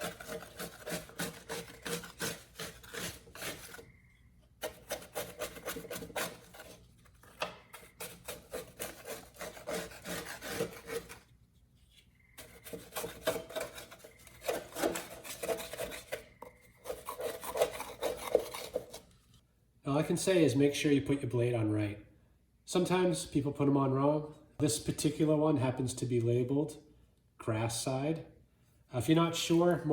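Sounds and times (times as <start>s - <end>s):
file scraping steel blade: 0.0s - 4.0s, 4.6s - 11.3s, 11.9s - 19.2s.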